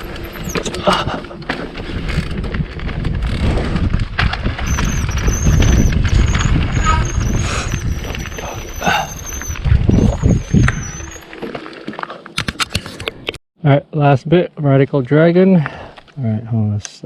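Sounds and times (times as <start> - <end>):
rattling bike parts: 0.0 - 10.2
bike tyres rumbling on dirt: 0.0 - 12.2
wind: 0.0 - 17.0
high-pitched squeal: 4.6 - 11.5.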